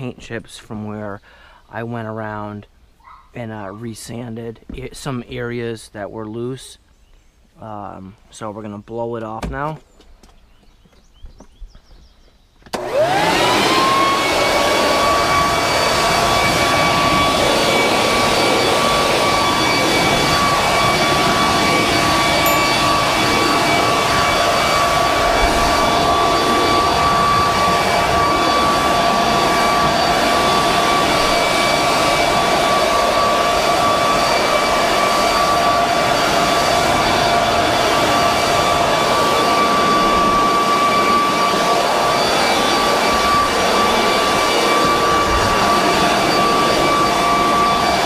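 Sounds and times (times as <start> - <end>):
leaf blower whine and air rush: 12.7 - 48.0.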